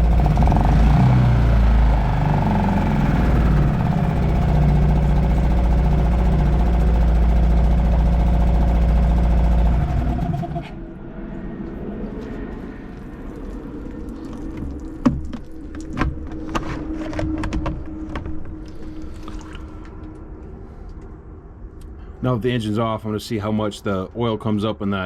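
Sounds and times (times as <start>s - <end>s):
outboard motor running: 0.0s - 10.9s.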